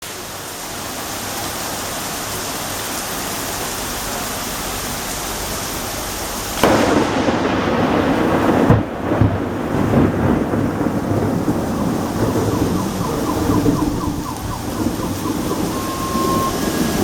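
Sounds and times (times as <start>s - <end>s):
rain hiss: 0.0s - 17.0s
thunderclap rumbling: 4.6s - 17.0s.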